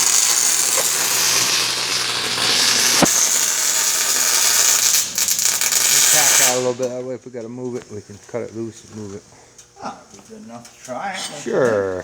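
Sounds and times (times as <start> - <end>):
arc welder crackling sizzle: 0.0 - 7.2.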